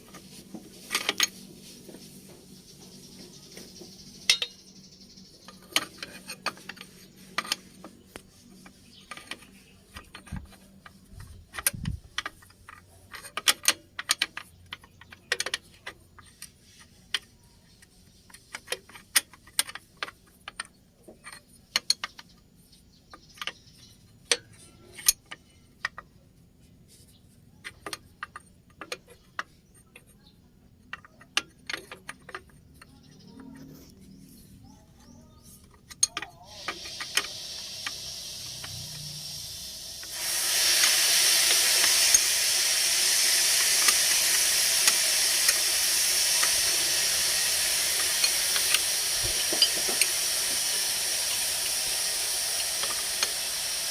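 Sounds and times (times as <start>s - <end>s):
metal tools clinking on bolts: 4.2s - 4.6s, 47.4s - 50.2s.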